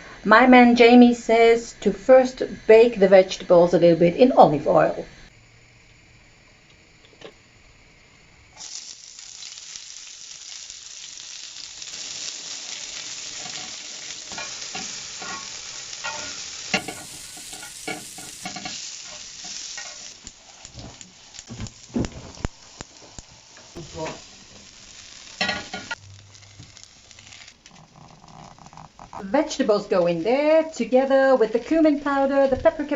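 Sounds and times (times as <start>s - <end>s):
vegetables sizzling in a pan: 4.9s - 27.8s.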